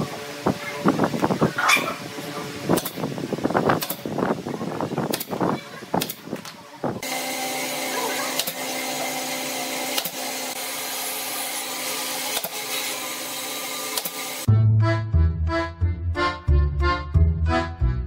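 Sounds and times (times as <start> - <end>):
power tool whirring: 7.0 - 14.5.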